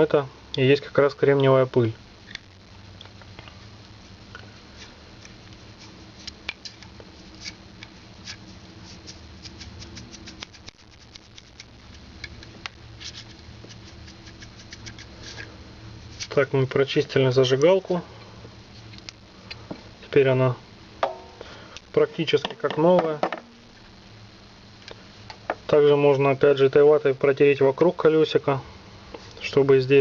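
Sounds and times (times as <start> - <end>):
faint steady hum: 0.0 - 30.0
cotton wool scratching metal: 8.2 - 12.0.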